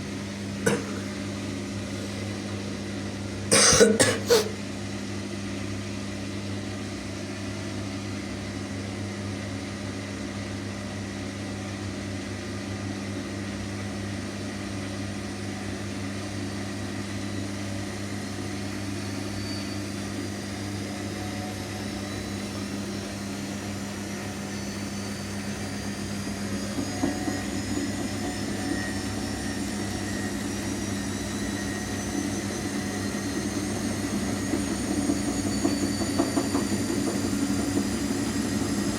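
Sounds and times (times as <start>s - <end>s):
washing machine motor whine: 0.0s - 38.9s.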